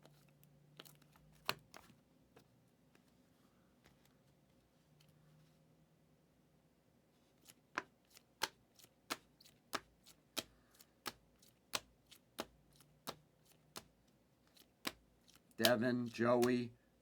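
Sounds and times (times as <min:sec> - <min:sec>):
trading cards clicking on table: 0:14.5 - 0:16.6.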